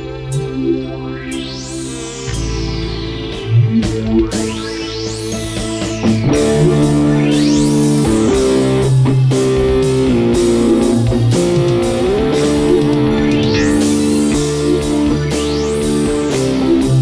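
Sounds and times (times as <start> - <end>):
electric organ chords: 0.0 - 17.0
electric guitar: 0.2 - 17.0.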